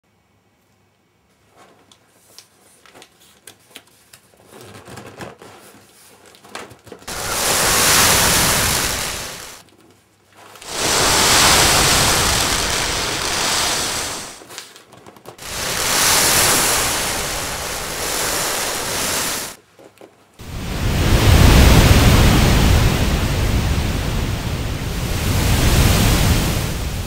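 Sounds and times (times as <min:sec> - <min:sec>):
beans sliding across a sieve: 0:07.1 - 0:09.6, 0:10.6 - 0:14.5, 0:15.4 - 0:19.6.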